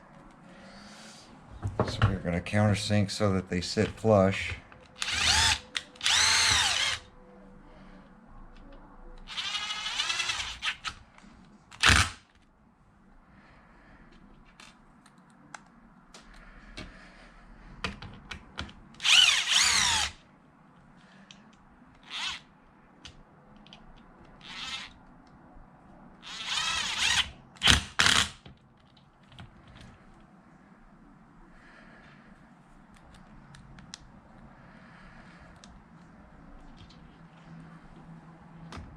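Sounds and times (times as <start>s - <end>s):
power drill whining: 5.0s - 7.1s, 9.3s - 10.9s, 19.0s - 20.2s, 22.0s - 22.4s, 24.4s - 24.9s, 26.2s - 28.2s.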